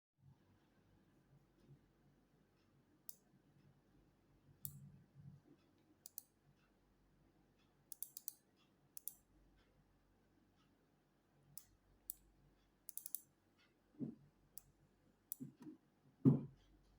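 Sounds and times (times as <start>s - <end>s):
computer mouse clicks: 6.0s - 6.3s, 7.9s - 8.4s, 9.0s - 9.2s, 12.9s - 13.3s.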